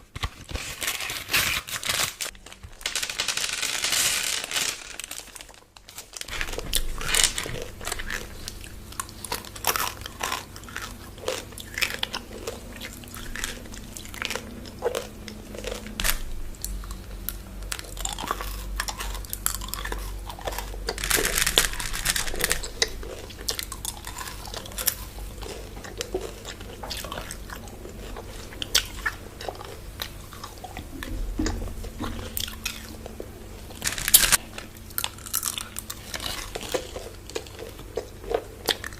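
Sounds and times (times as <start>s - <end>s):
chewing crunchy chocolate bars: 0.0s - 38.9s.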